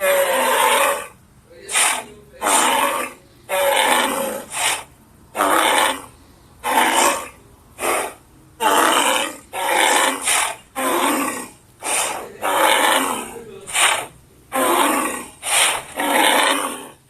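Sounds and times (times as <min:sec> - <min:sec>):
person roaring and grunting: 0:00.0 - 0:04.8, 0:05.4 - 0:17.0.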